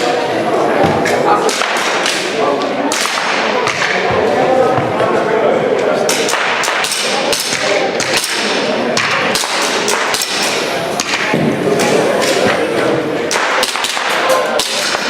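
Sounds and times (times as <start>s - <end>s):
background voices: 7.0s - 13.3s
airsoft pistol shots: 13.3s - 15.0s.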